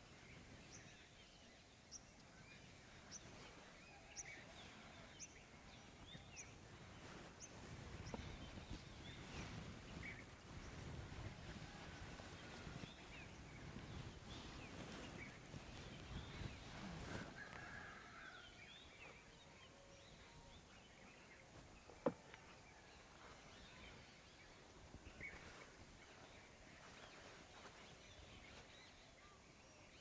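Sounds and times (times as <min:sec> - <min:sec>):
faint bird chirps: 0:00.0 - 0:30.0
low rustling: 0:05.7 - 0:18.0.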